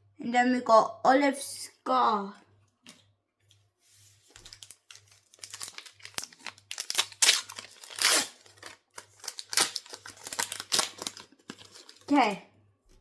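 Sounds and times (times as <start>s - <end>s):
foil wrapper crinkling and tearing: 4.3s - 12.3s.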